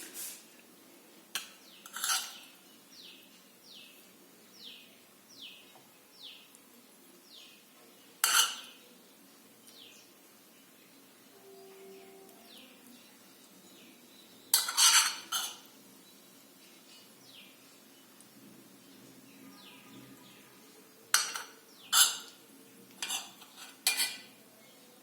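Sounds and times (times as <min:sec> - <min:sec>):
utensils clattering against cookware: 0:01.4 - 0:02.6, 0:08.2 - 0:08.8, 0:14.5 - 0:15.7, 0:21.1 - 0:24.4.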